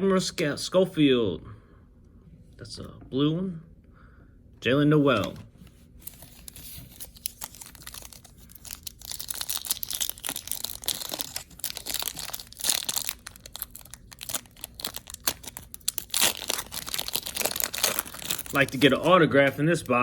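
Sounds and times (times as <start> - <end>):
card pack wrapper crinkling: 6.0 - 20.0.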